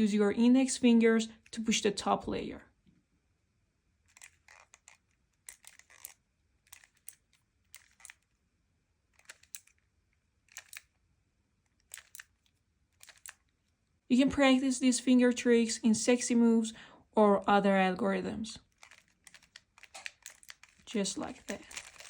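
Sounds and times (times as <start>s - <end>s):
puzzle cube plastic clicks: 4.1s - 8.4s, 9.2s - 11.0s, 11.7s - 13.6s, 18.6s - 22.0s.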